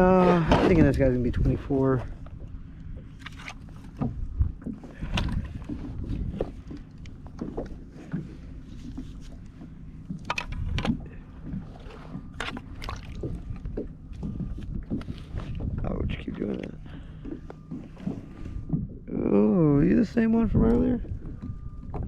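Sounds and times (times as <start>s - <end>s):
wind rumble on microphone: 0.0s - 22.0s
knocks and clatter on kayak: 3.2s - 18.9s, 20.4s - 22.0s.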